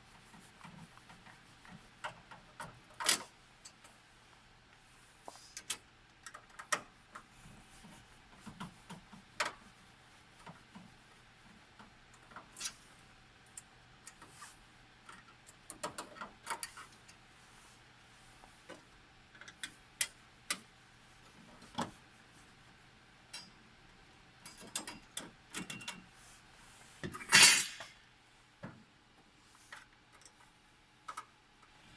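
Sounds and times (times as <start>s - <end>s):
clicks and taps of tools: 29.7s - 31.7s.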